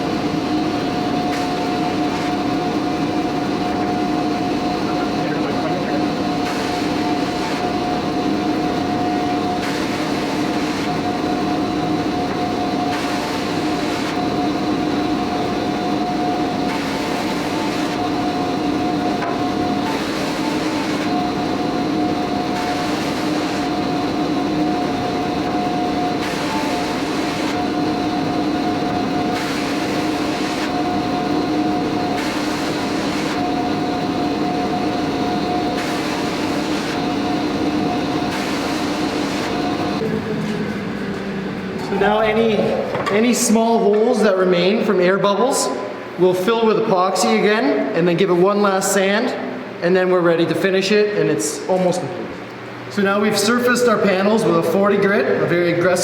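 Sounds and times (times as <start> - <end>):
panel sander running: 0.0 - 42.9.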